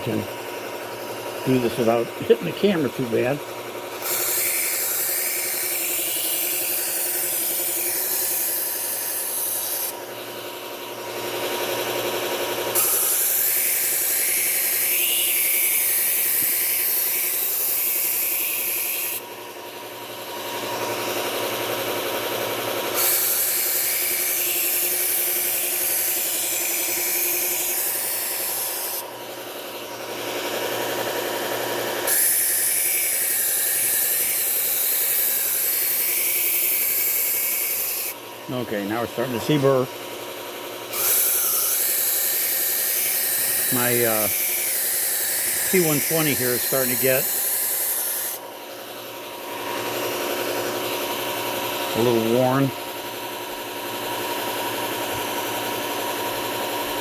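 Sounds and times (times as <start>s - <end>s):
belt sander motor hum: 0.0s - 57.0s
knife edge grinding on belt: 4.0s - 9.9s, 12.8s - 19.2s, 22.9s - 29.0s, 32.0s - 38.2s, 40.9s - 48.4s.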